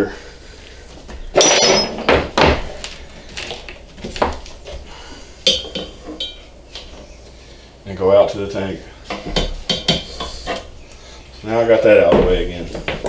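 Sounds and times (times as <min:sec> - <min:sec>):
metal tubing clanking: 0:01.4 - 0:02.9.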